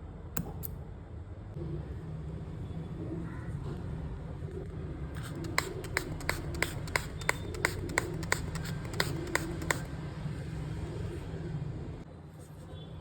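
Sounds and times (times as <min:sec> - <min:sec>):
sharp taps or clicks: 0:00.4 - 0:00.7, 0:05.2 - 0:09.9.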